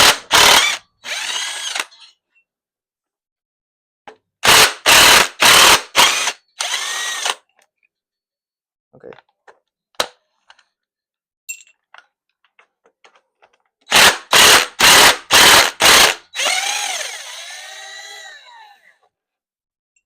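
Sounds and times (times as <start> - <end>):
impact wrench bursts: 4.4 - 7.4, 13.9 - 18.2.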